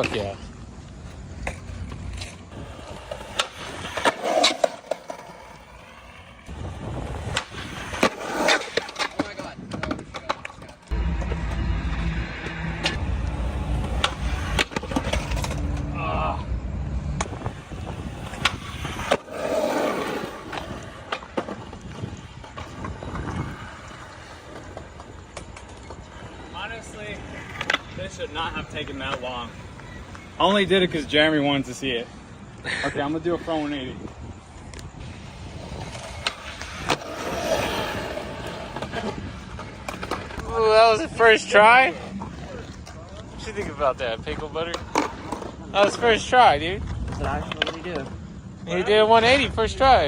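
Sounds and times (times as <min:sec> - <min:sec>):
skateboard wheels rolling on concrete: 0:00.0 - 0:50.0
skateboard clacks and knocks: 0:07.0 - 0:11.4.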